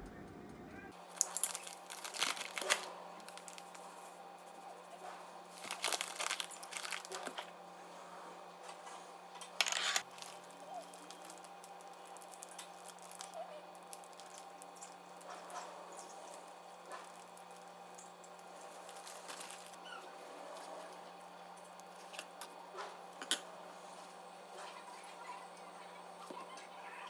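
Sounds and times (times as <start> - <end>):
objects crinkling and clattering: 1.0 - 7.5, 9.4 - 19.8.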